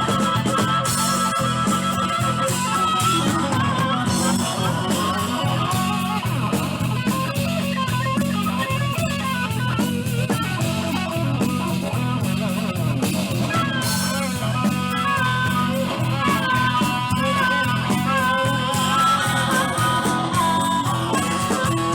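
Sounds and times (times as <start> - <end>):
bass line: 0.0 - 21.9
drum kit: 0.0 - 21.9
lead guitar with bent notes: 0.0 - 21.9.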